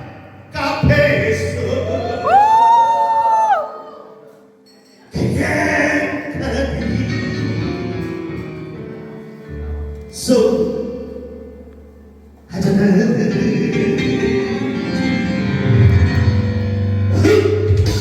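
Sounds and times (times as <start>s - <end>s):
music with singing: 4.7s - 9.0s.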